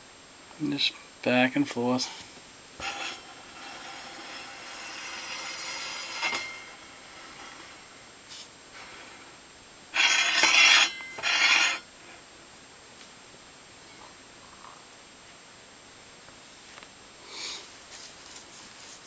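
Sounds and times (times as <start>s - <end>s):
wood scraping across saw table: 2.8s - 9.0s, 10.0s - 11.8s.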